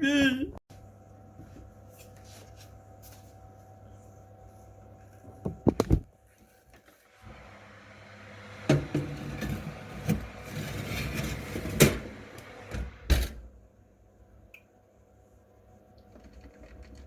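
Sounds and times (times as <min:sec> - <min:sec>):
oven rushing noise: 0:07.2 - 0:13.6.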